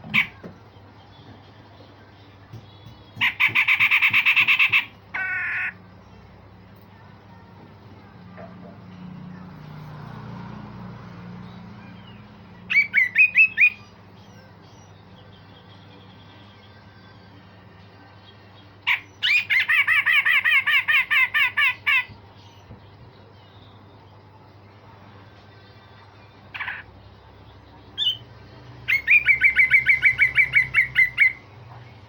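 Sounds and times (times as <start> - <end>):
bulbul singing: 0.0 - 5.8, 11.3 - 24.4, 25.4 - 31.6.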